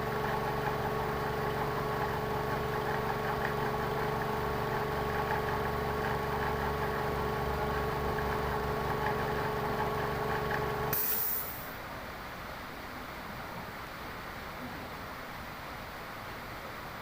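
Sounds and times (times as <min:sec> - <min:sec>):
short hiss: 0:10.9 - 0:11.8.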